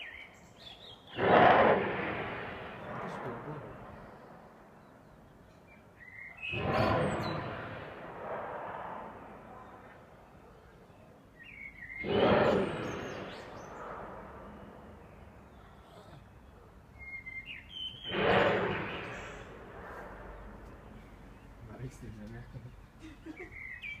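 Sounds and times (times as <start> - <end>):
loud drawn-out echoing sound: 1.1 - 4.8, 6.4 - 10.4, 11.8 - 15.6, 18.0 - 21.5
short bird chirps: 11.4 - 19.6.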